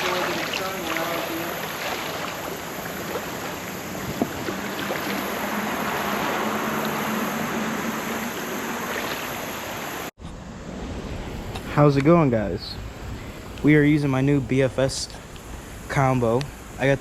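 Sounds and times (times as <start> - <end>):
creek water rushing: 0.0 - 10.1.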